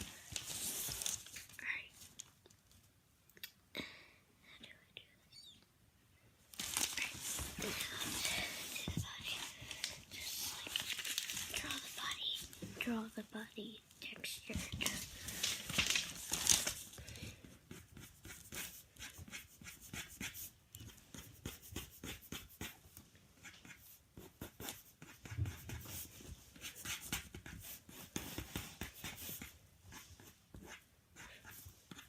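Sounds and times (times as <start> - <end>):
pen scratching on paper: 17.7 - 22.8, 23.4 - 32.0.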